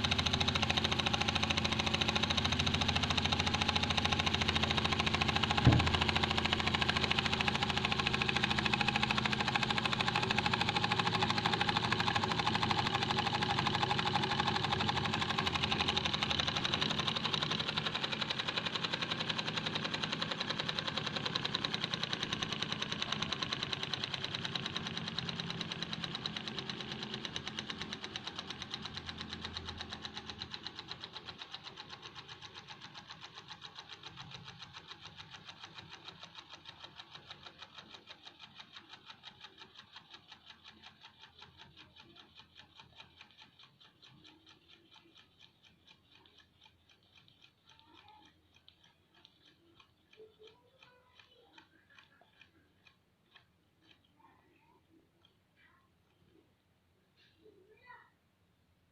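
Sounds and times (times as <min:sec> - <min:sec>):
steam engine knocking: 0:00.0 - 0:49.9.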